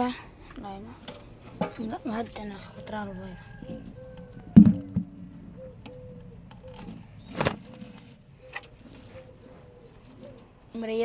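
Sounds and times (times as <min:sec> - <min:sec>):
pigeons calling: 0:00.0 - 0:11.0
sharp knocks: 0:04.4 - 0:05.6.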